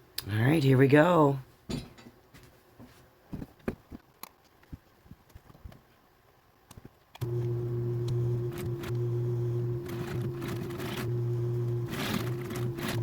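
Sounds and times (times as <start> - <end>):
sewing machine running: 7.2 - 13.0.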